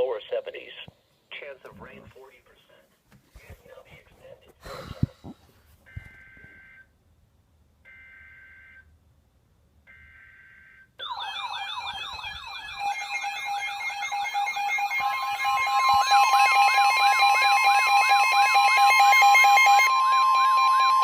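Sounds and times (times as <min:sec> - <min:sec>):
alert alarm wail: 0:09.9 - 0:21.0
steady warning tone: 0:11.0 - 0:21.0.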